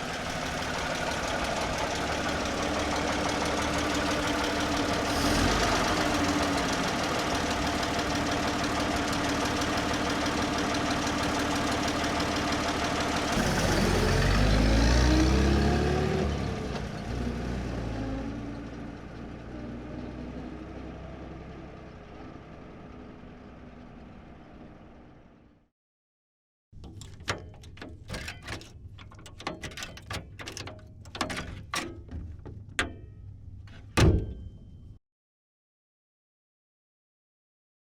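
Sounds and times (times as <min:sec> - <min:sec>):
car engine idling and revving: 0:00.0 - 0:25.6
key rattling in lock: 0:26.8 - 0:32.4
latch clicking: 0:26.8 - 0:33.1
door slamming: 0:34.0 - 0:34.7.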